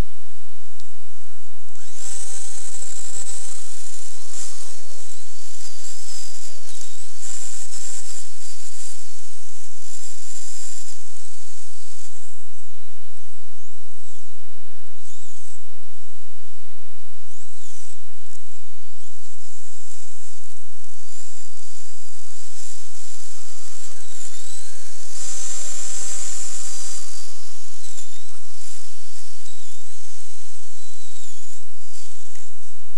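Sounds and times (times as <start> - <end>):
toy electric motor whining: 1.7 - 12.4, 19.6 - 32.6.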